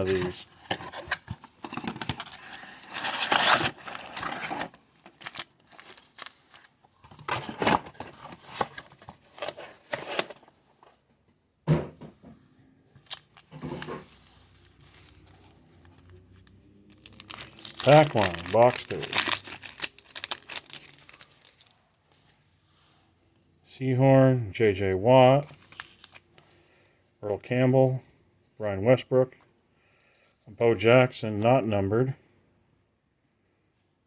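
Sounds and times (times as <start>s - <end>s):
packaging being torn open: 2.2s - 6.7s, 16.9s - 21.7s.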